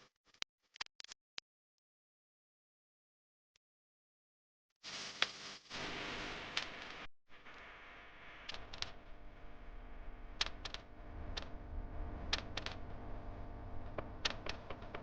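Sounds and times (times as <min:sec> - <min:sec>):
sharp clicks and light taps: 0:14.0 - 0:15.0.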